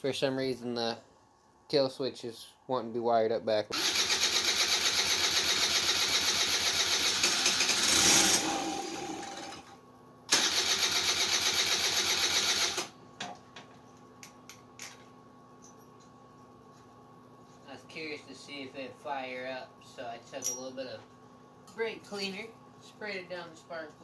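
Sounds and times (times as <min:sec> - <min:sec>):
scooter electric starter cranking: 0:03.7 - 0:09.7, 0:10.3 - 0:12.9.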